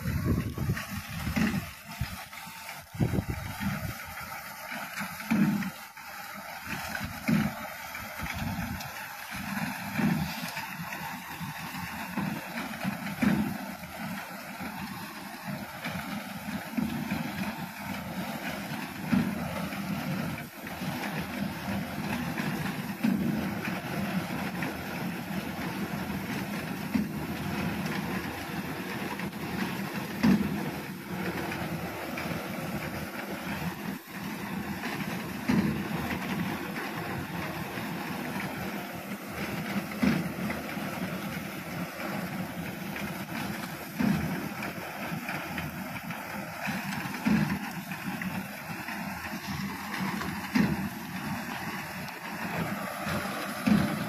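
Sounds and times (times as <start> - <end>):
reaper binder running: 0.0 - 54.0.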